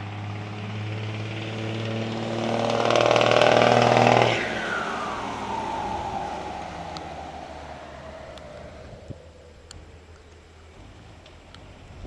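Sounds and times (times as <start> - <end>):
turbo diesel engine roaring: 0.0 - 12.0
turbo whistle falling in pitch: 3.8 - 9.2.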